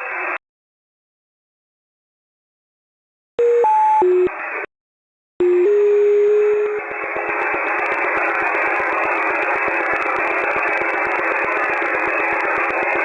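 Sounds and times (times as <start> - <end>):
radio hiss: 6.8 - 13.0
fast interference ticking: 7.2 - 13.0.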